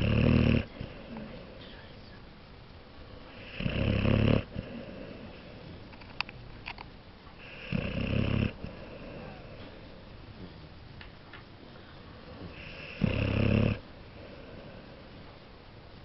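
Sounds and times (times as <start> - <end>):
dog snoring: 0.0 - 1.5, 3.1 - 5.8, 7.4 - 9.8, 12.3 - 15.1.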